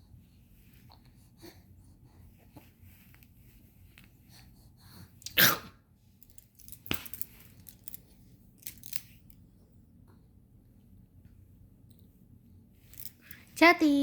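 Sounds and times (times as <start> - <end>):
child sneezing or coughing: 5.3 - 5.8.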